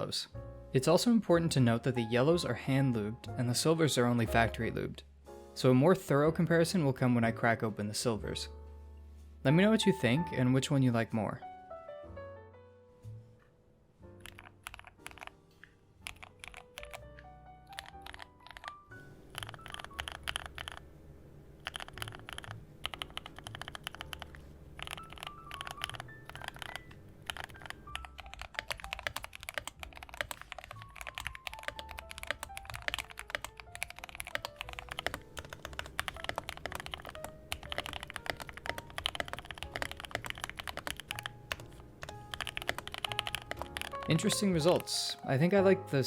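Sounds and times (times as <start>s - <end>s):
soft background music: 0.0s - 46.0s
mechanical keyboard typing: 14.2s - 15.4s, 16.0s - 20.9s, 21.6s - 44.9s.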